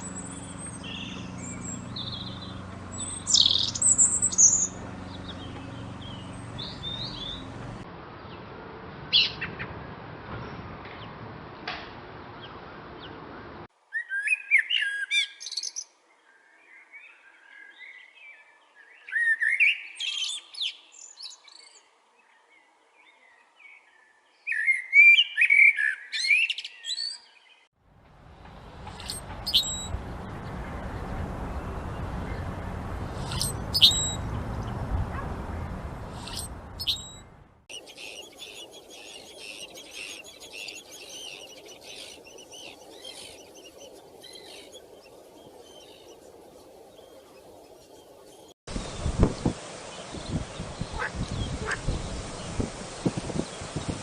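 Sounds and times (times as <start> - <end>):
high-pitched bird twittering: 0.0 - 5.4, 29.0 - 30.0, 33.2 - 34.2, 36.1 - 46.2
high bird chirps: 0.0 - 7.7, 28.8 - 31.0, 33.1 - 49.2
small birds singing: 0.0 - 8.4, 13.9 - 27.7, 28.4 - 54.0.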